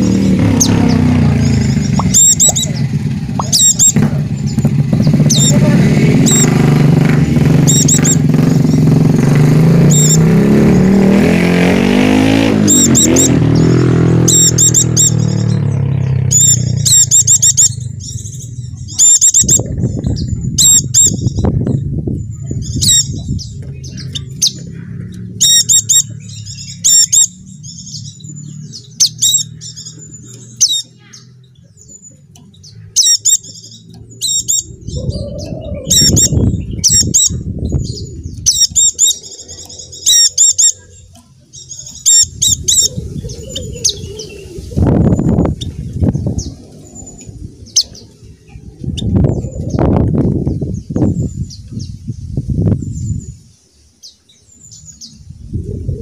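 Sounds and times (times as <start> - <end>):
loud low rumble: 0.0 - 40.1, 40.8 - 53.4, 55.1 - 56.0
birds chirping: 0.0 - 56.0.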